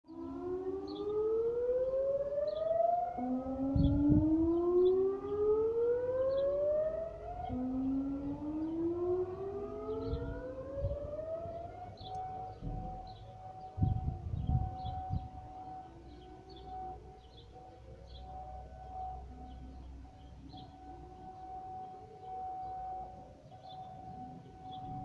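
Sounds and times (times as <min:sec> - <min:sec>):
air raid siren: 0:00.1 - 0:25.0
low thumps: 0:07.5 - 0:15.5.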